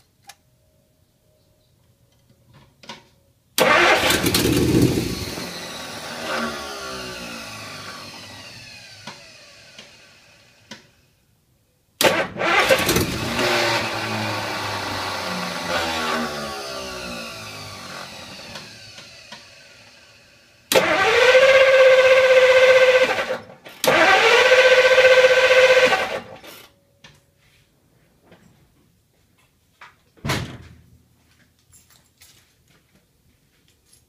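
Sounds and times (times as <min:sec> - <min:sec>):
car starter whirring: 0:03.6 - 0:11.1, 0:12.0 - 0:26.6.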